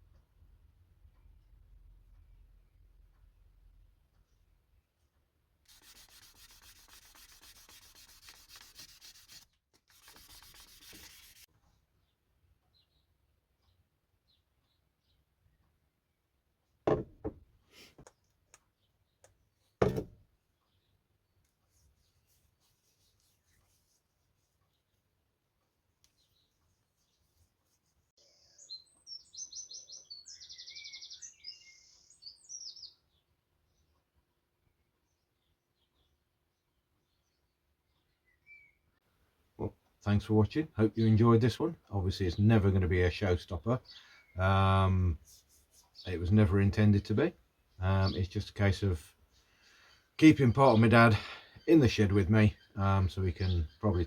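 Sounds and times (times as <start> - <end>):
scratchy rubbing strokes: 5.7 - 11.5, 21.7 - 24.8, 26.6 - 28.1, 45.2 - 46.1
songbird singing: 11.7 - 15.8, 28.2 - 39.0, 45.8 - 54.0.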